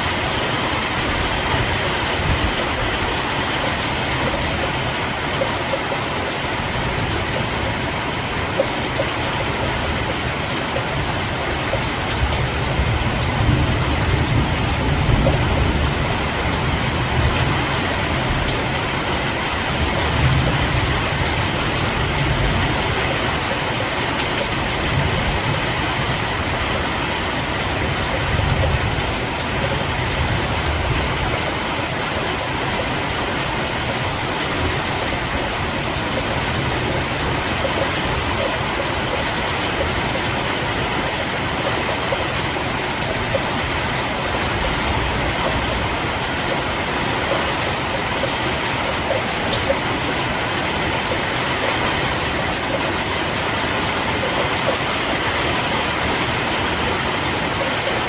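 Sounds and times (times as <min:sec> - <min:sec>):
steady rain hissing: 0:00.0 - 0:58.0.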